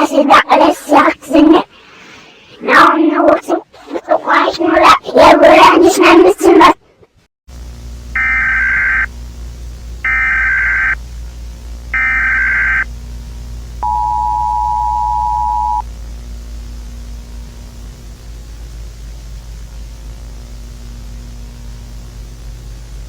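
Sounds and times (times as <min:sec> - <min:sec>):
steady hiss: 0:07.5 - 0:13.8
digital data tone bursts: 0:08.1 - 0:09.1, 0:10.0 - 0:11.0, 0:11.9 - 0:12.9, 0:13.8 - 0:15.8
two-tone attention signal: 0:12.0 - 0:12.8, 0:13.8 - 0:15.8.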